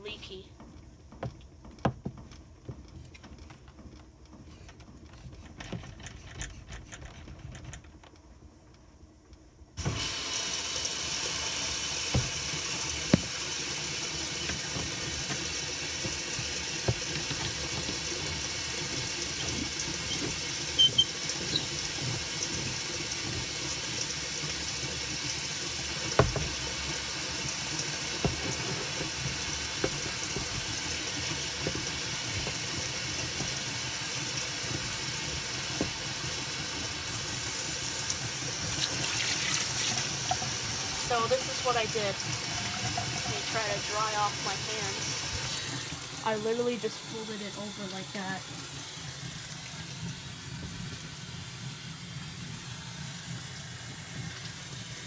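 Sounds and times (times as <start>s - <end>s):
water running from a tap: 9.8s - 55.0s
knocks: 12.1s - 13.5s, 26.2s - 26.8s, 28.2s - 31.0s.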